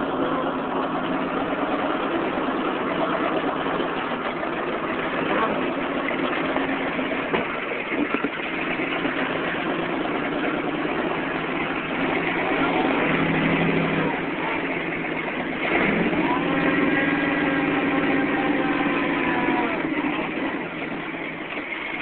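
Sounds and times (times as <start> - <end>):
off-road vehicle engine revving: 0.0 - 22.0.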